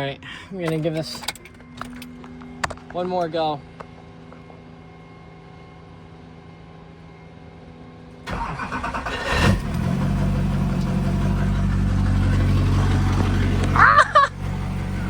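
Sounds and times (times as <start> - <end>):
diesel engine starting and idling: 8.2 - 15.0
starter motor cranking: 8.3 - 13.8
low hum: 9.5 - 15.0.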